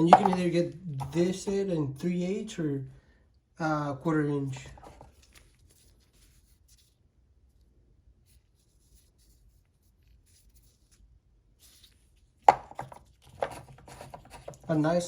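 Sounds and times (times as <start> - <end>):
tools clacking: 0.0 - 1.4.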